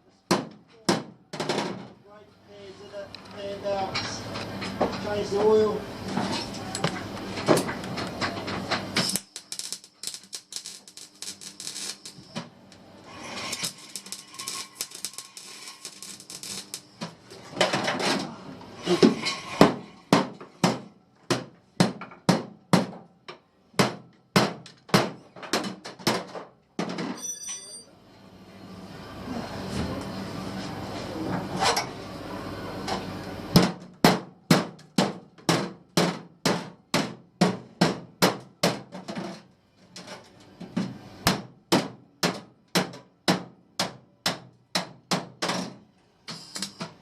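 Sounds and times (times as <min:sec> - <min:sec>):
dense noisy crackle: 0:07.2 - 0:12.4, 0:13.0 - 0:17.3.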